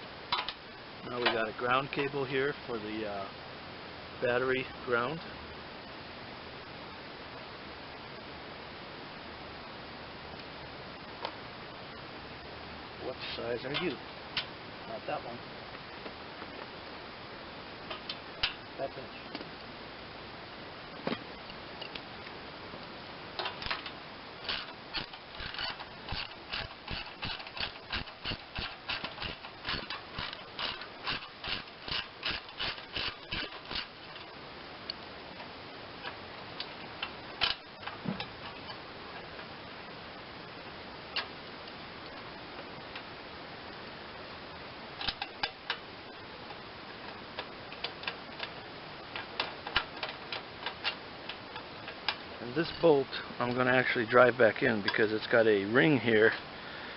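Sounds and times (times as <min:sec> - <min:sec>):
ratchet wrench clicking: 0:24.5 - 0:34.3.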